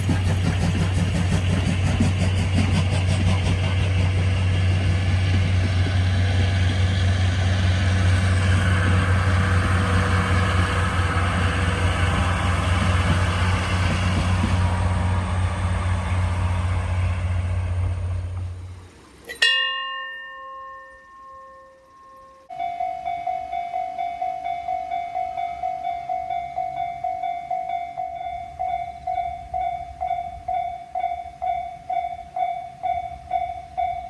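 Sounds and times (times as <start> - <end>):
vehicle engine running: 0.0 - 19.2.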